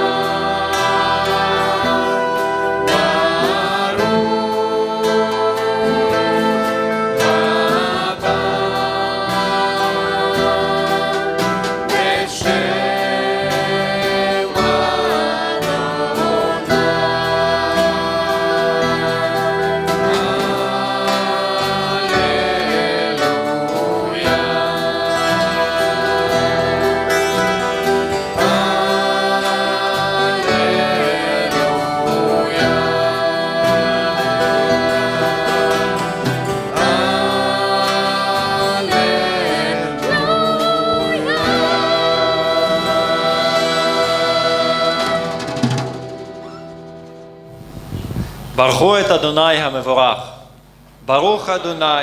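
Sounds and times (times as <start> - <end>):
instrumental accompaniment: 0.0 - 48.8
voices singing worship music: 0.0 - 52.0.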